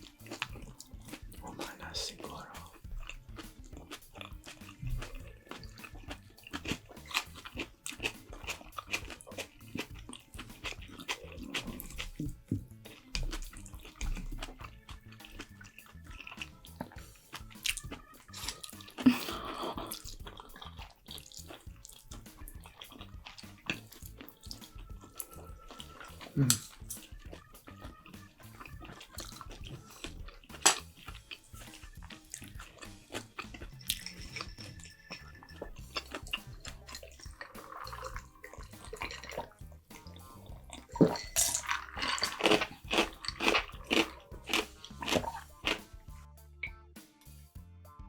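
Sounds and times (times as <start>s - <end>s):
chewing and biting food: 0.0s - 46.8s
soft background music: 0.0s - 48.0s
wet mouth smacks: 10.5s - 27.5s, 28.1s - 34.5s, 35.1s - 45.9s.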